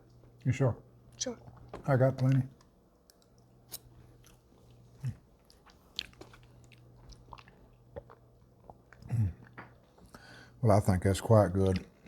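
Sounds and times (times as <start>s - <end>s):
low steady hum: 0.0s - 12.0s
person chewing: 3.1s - 10.2s.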